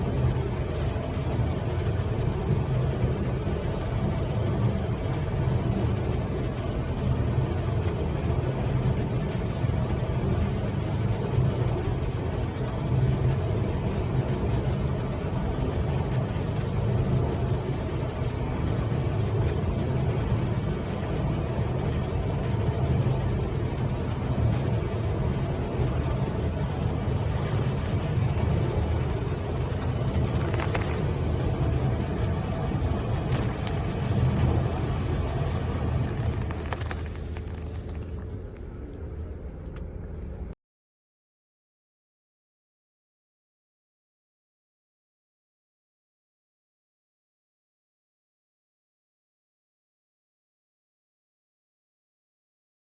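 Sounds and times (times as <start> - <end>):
wrapping machine humming: 21.7 - 40.5.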